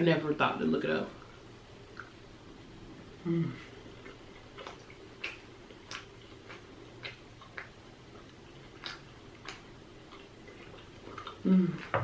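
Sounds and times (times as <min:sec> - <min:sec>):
mouth smacking while chewing: 0:03.6 - 0:12.0.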